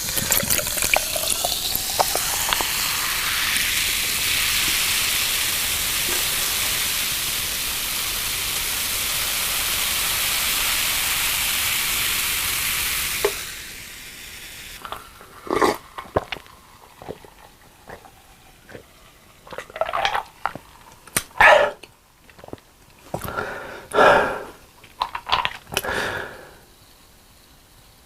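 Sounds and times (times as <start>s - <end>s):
steady hiss: 0.0s - 28.0s
crunchy biting and chewing: 14.8s - 26.1s.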